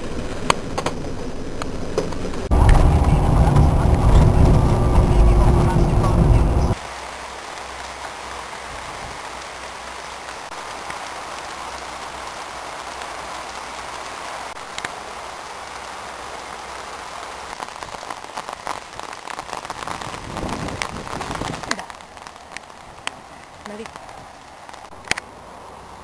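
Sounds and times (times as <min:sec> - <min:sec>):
steady rain falling: 0:00.0 - 0:26.0.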